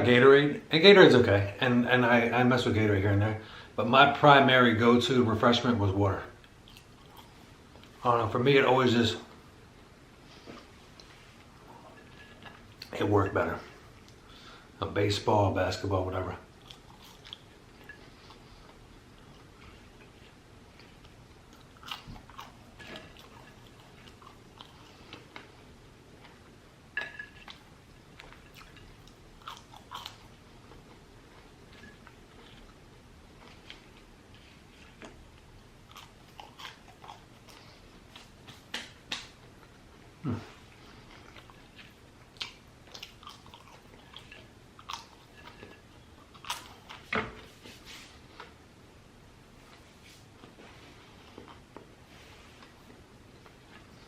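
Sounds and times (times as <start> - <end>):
crunchy food chewing: 16.5 - 47.1.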